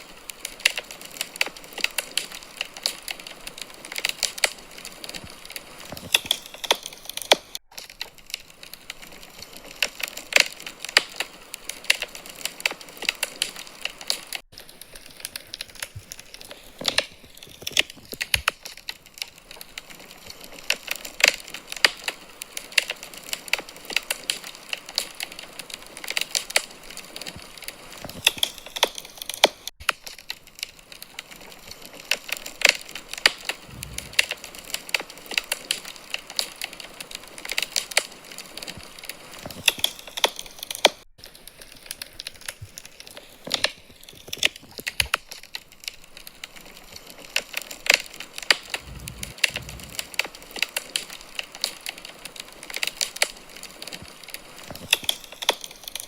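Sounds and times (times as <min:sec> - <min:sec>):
wood fire crackling: 0:00.0 - 0:56.0
soft low thumps: 0:33.6 - 0:34.2, 0:48.8 - 0:50.0.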